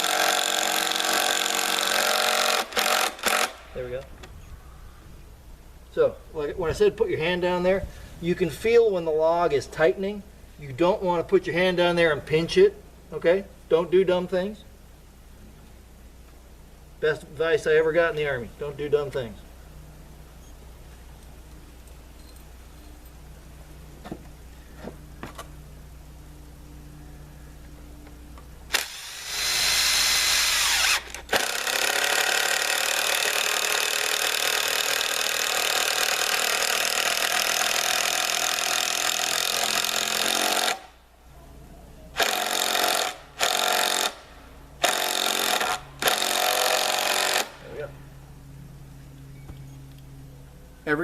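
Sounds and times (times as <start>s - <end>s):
impact driver running: 0.0s - 3.6s, 28.7s - 40.9s, 42.2s - 44.2s, 44.8s - 47.6s.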